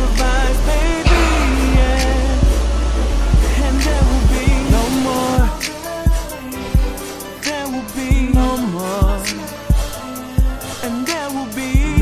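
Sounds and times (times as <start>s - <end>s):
pop song with sung melody: 0.0s - 12.0s
kick drum beat: 1.0s - 2.7s.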